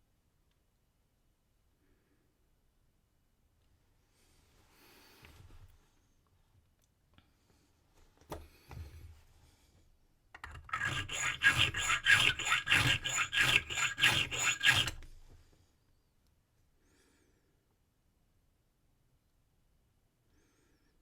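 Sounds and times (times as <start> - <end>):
file rasping on brass key: 10.4 - 15.4.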